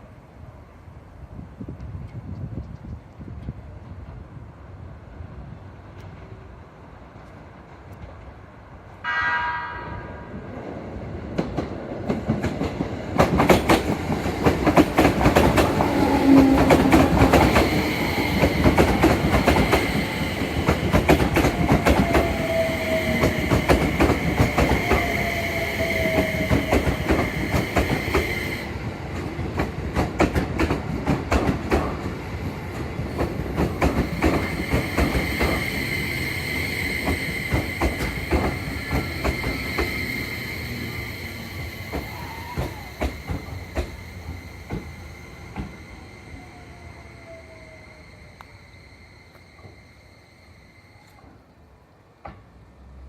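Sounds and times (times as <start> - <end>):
electric train high whine: 4.8 - 11.3, 12.9 - 29.5, 30.5 - 52.1
train horn blast: 9.0 - 10.5, 15.8 - 17.4
train wheels clacking over rail joints: 11.3 - 25.2, 29.1 - 35.7, 36.9 - 40.0.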